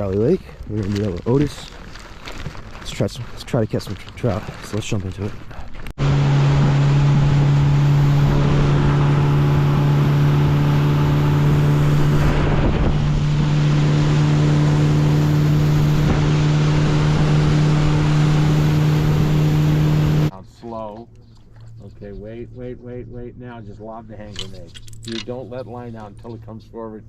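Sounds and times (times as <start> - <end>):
water noise: 5.4 - 20.3
outboard motor humming: 6.0 - 20.3
rushing wind: 6.0 - 20.3.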